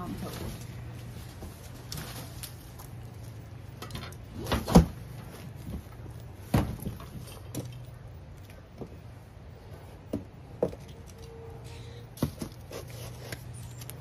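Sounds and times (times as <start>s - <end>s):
low steady hum: 0.0s - 14.0s
container thumps and knocks: 6.5s - 7.7s.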